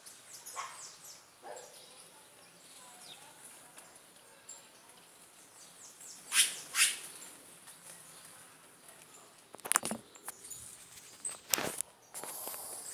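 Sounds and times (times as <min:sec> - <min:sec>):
bird calling with downward calls: 0:06.1 - 0:07.3.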